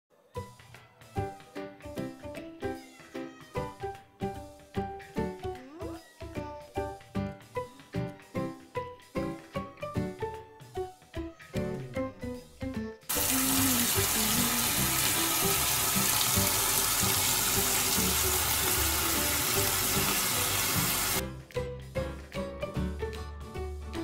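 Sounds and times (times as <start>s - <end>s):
light background music: 0.1s - 24.0s
water running from a tap: 13.1s - 21.2s.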